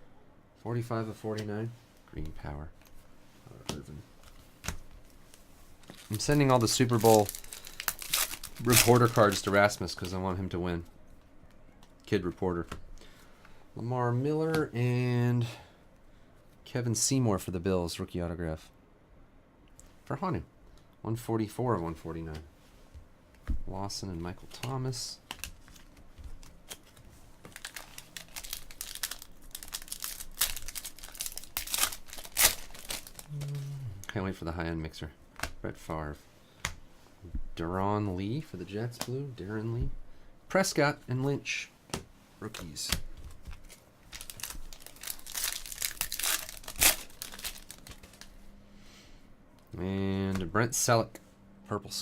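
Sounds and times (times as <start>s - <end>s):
cards being handled: 2.2s - 10.2s, 24.2s - 33.5s, 41.9s - 48.4s
wrappers crinkling and tearing: 4.2s - 10.2s, 24.6s - 33.6s, 42.4s - 48.4s.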